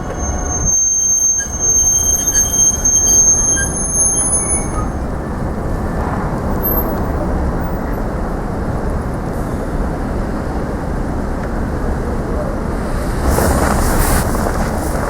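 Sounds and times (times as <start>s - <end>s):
high wheel squeal: 0.0s - 5.6s.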